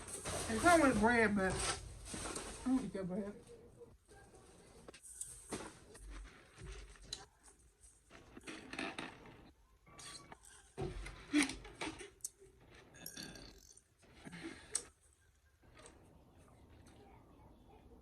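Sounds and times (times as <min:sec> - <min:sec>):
food wrappers rustling: 0:00.0 - 0:03.1.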